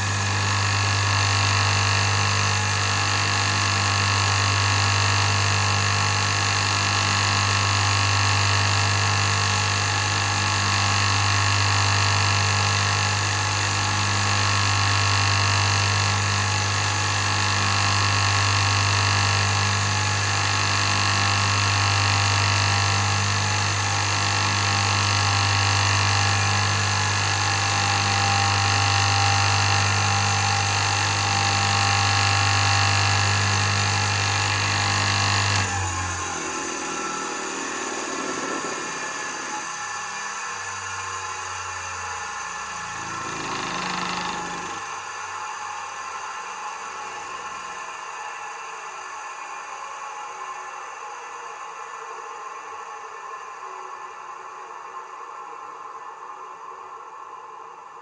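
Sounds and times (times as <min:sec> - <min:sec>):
buffing wheel motor humming: 0:00.0 - 0:45.2.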